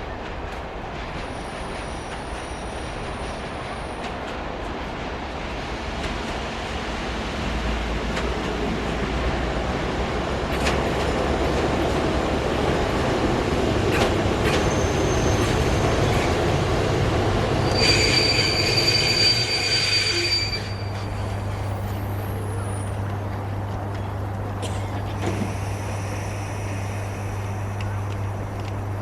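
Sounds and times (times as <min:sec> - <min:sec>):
train wheels rumbling on rails: 0:00.0 - 0:29.0
metallic wheel squeal: 0:14.5 - 0:16.4, 0:17.6 - 0:23.0.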